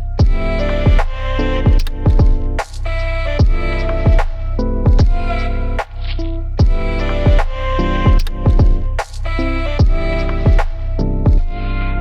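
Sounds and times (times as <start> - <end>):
held synth chords: 0.0 - 12.0
kick drum beat: 0.2 - 2.6, 3.4 - 5.3, 6.6 - 9.0, 9.8 - 11.6.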